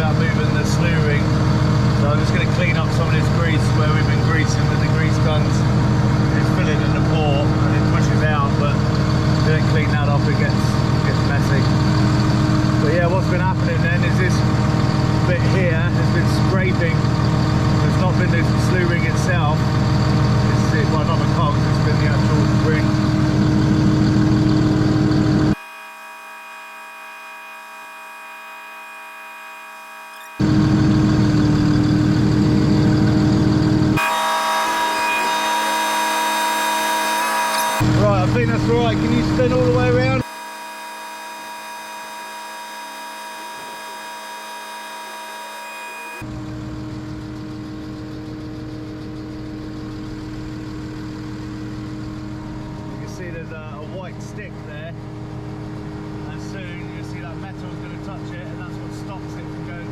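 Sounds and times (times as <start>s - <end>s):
truck engine running: 0.0s - 59.9s
steady hum of fixed tones: 33.9s - 59.9s.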